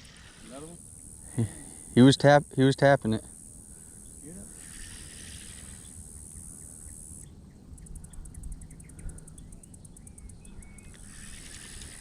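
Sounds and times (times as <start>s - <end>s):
insect buzzing: 0.0s - 12.0s
insect pulsed chirping: 0.0s - 12.0s
bird chirps: 5.7s - 11.5s.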